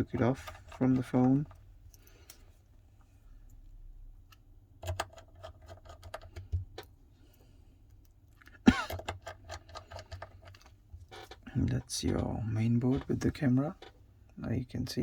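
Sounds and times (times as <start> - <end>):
phone parts being handled: 0.0 - 2.0.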